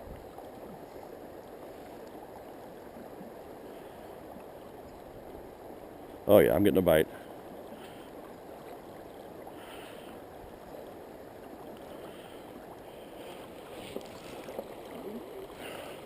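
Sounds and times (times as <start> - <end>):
moving canal water: 0.0 - 16.0
faint small ticks: 1.8 - 2.5.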